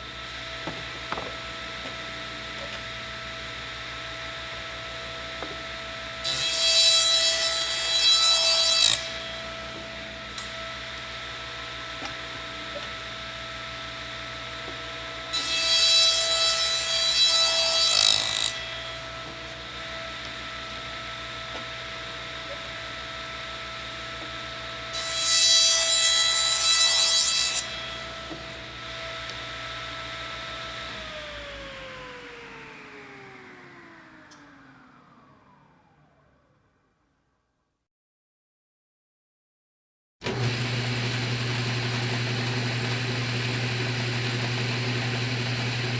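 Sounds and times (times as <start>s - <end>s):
electric saw whining: 0.0s - 36.6s, 40.3s - 45.9s
saw cutting into material: 5.6s - 10.7s, 15.2s - 36.1s, 40.2s - 45.9s.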